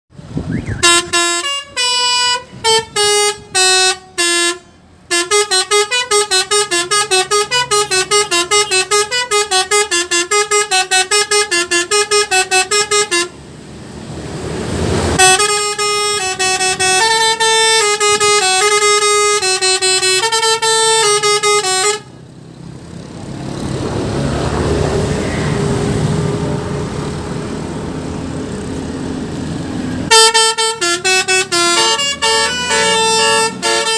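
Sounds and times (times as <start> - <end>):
steady rumbling noise: 0.2 - 1.3
musical bus horn playing a tune: 0.6 - 13.4, 15.2 - 22.2, 30.0 - 33.9.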